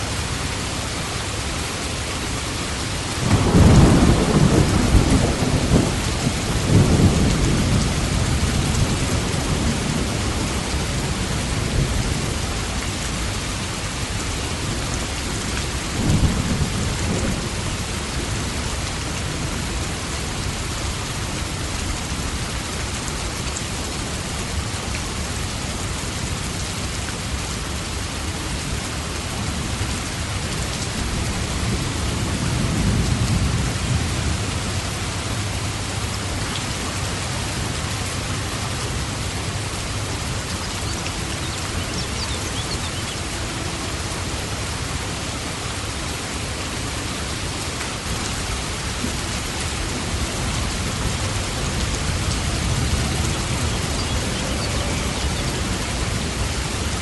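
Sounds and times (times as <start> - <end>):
rain hissing: 0.0 - 57.0
thunder rumbling: 3.2 - 12.4.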